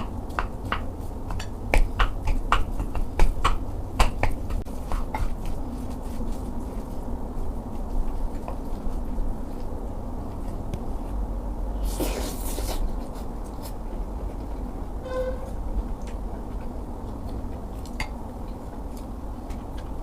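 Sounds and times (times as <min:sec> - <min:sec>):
steady low rumble: 0:00.0 - 0:20.0
squeak-like tone: 0:15.0 - 0:15.6.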